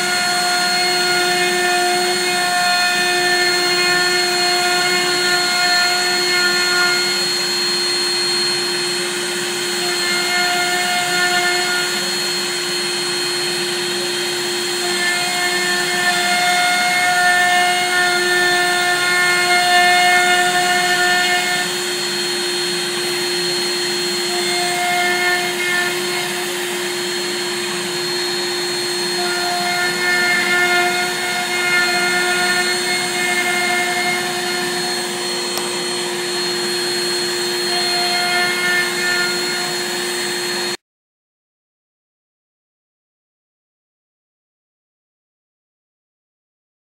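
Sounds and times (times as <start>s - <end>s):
milling machine spindle whine: 0.0s - 40.8s
higher whine: 7.0s - 40.8s.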